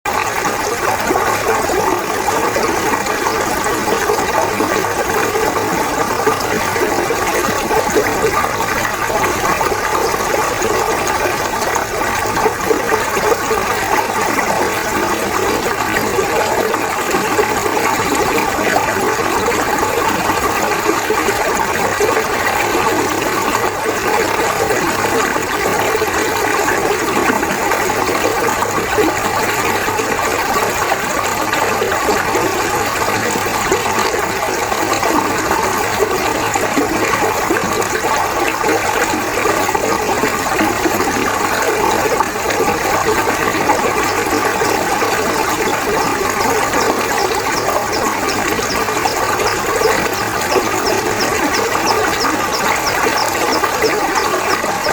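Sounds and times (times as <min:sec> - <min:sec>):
river water rushing: 0:34.7 - 0:54.9.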